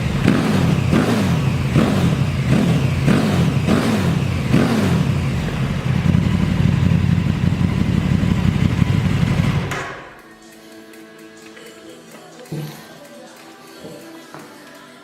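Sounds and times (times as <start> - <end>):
motorcycle engine revving: 0.0 - 10.2.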